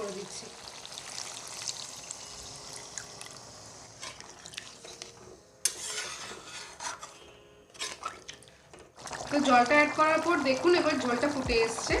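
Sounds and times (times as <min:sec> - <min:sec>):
water pouring into a pan: 0:00.1 - 0:04.8, 0:08.0 - 0:12.0.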